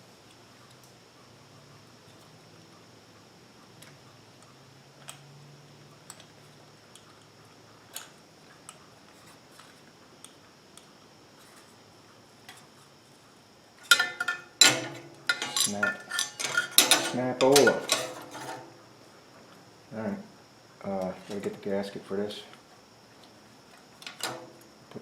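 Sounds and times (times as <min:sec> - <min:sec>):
clattering metal knocks: 0:13.9 - 0:18.7.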